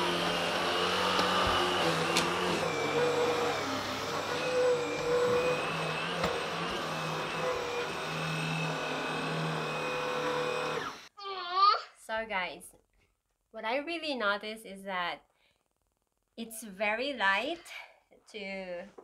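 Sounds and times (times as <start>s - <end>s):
vacuum cleaner running on carpet: 0.0s - 11.1s.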